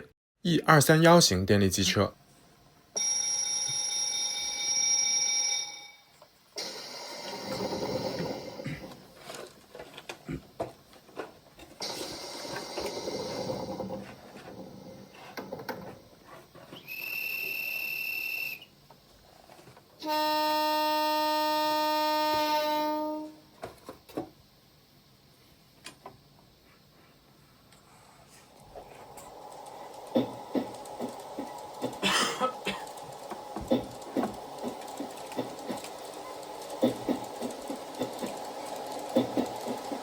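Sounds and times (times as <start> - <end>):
clicks and train running noise: 6.6 - 16.0, 28.8 - 40.0
loud train horn blast: 20.0 - 23.5.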